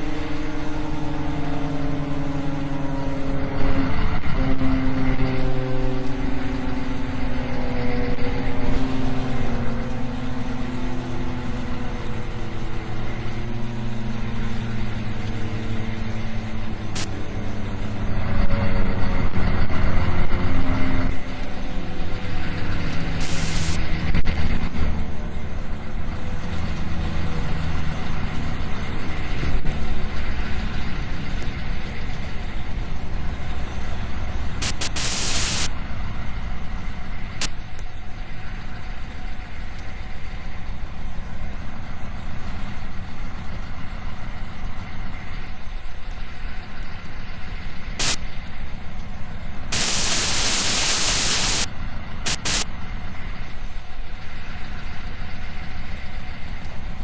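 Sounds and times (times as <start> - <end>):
truck engine running: 0.0 - 57.0
short hissing bursts: 23.2 - 23.8, 34.6 - 35.7, 49.7 - 51.7, 52.3 - 52.6.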